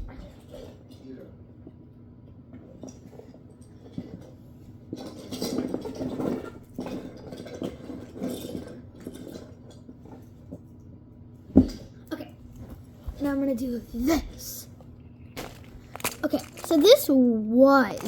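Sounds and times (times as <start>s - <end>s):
fidget toys clattering: 15.4s - 18.0s.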